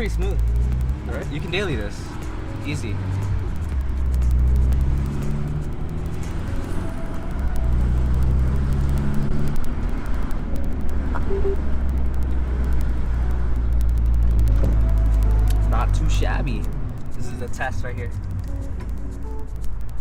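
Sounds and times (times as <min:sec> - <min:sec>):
car engine drone: 0:00.0 - 0:20.0
tyre and road noise: 0:00.0 - 0:20.0.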